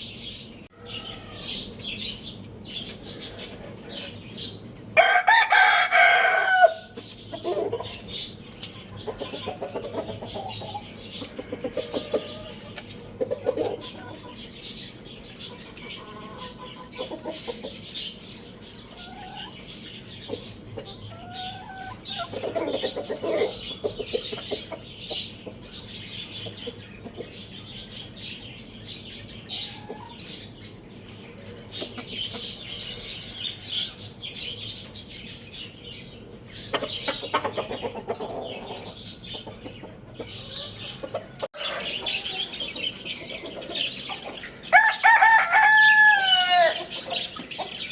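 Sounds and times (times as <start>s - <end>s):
chickens clucking: 0.2s - 47.9s
rooster crowing: 5.0s - 7.0s, 44.7s - 46.9s.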